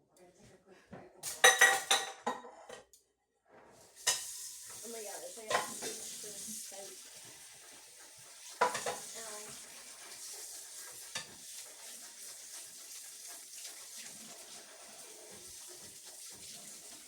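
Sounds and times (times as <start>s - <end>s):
loud dish clatter: 1.4s - 2.6s, 5.5s - 6.2s, 8.6s - 9.2s
tap water running into sink: 3.8s - 17.0s.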